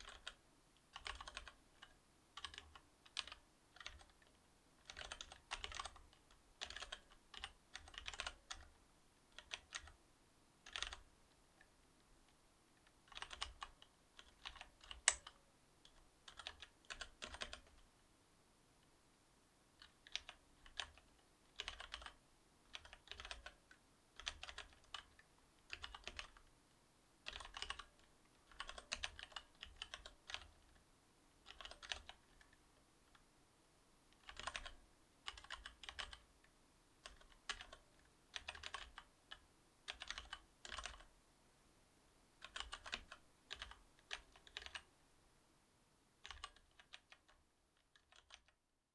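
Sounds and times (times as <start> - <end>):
mechanical keyboard typing: 0.0 - 8.7, 9.3 - 10.0, 10.6 - 11.1, 13.0 - 17.8, 19.8 - 26.5, 27.2 - 30.8, 31.4 - 32.6, 34.1 - 36.2, 37.0 - 41.1, 42.4 - 44.9, 46.2 - 48.6.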